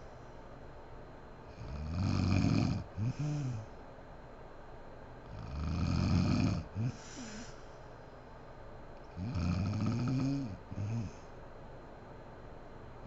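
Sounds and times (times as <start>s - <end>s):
woman snoring: 1.5s - 3.7s, 5.3s - 7.5s, 9.2s - 11.2s.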